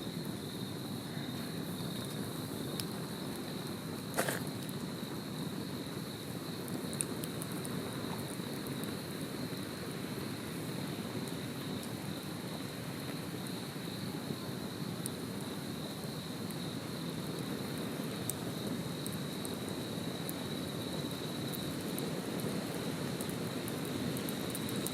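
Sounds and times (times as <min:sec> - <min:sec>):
campfire burning: 0:00.0 - 0:24.9
crickets trilling: 0:00.0 - 0:24.9
fire crackles: 0:00.0 - 0:24.9.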